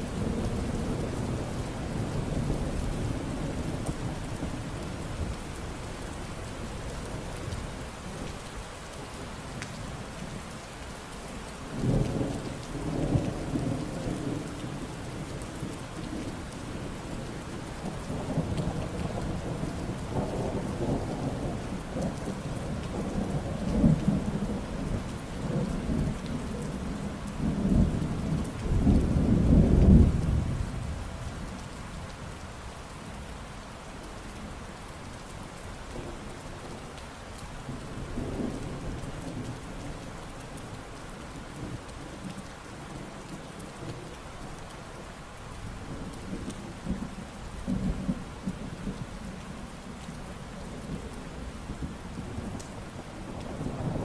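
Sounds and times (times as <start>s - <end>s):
steady rain falling: 0.0s - 54.0s
thunder rumbling: 45.8s - 54.0s.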